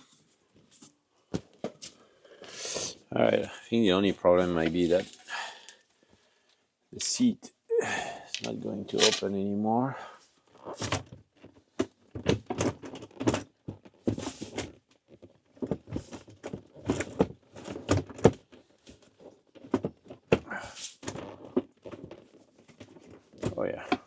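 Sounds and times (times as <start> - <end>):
knocks and clunks of handling a seat: 10.8 - 18.4.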